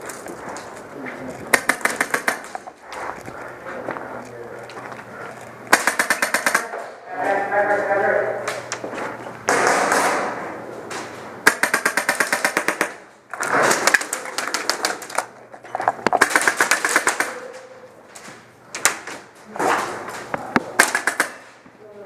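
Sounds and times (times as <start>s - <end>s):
airsoft gun full-auto bursts: 1.5s - 2.6s, 5.7s - 6.7s, 11.4s - 13.0s, 16.2s - 17.4s, 20.8s - 21.5s.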